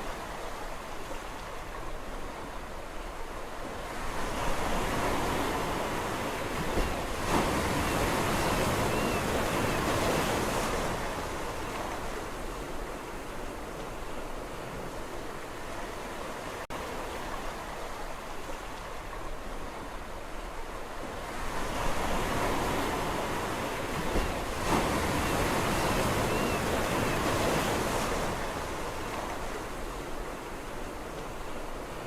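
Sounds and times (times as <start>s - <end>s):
sea waves washing onto shore: 20.8s - 32.0s.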